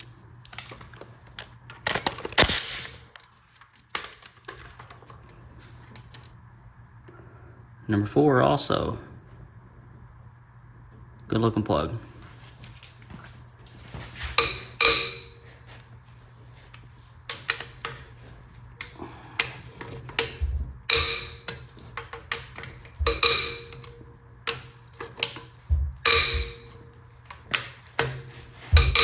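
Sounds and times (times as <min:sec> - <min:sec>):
quiet handling sounds: 0:12.0 - 0:29.0
metal tools clinking: 0:14.2 - 0:15.7, 0:18.8 - 0:29.0.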